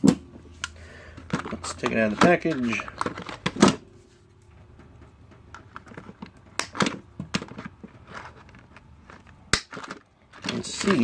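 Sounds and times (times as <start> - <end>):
plastic packaging crackling: 5.8 - 11.0.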